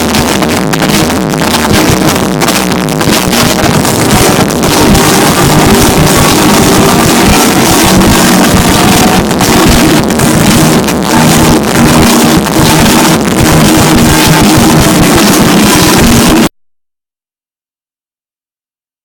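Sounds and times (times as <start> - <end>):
loud techno music: 0.0 - 16.5.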